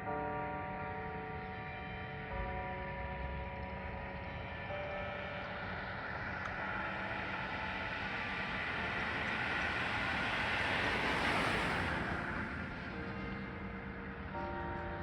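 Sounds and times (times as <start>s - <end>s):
vehicle passing: 8.4s - 12.8s.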